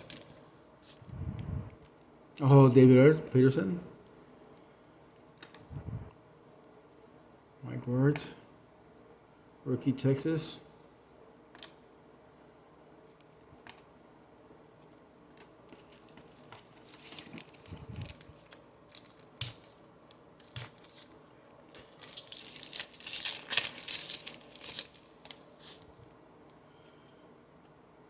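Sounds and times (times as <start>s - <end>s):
foil wrapper tearing and crumpling: 15.8s - 25.8s.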